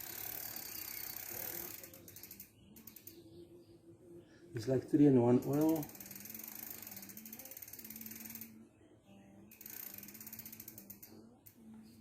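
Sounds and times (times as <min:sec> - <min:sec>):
bicycle freewheel ratchet clicking: 0:00.0 - 0:03.2, 0:05.4 - 0:08.6, 0:09.5 - 0:11.6.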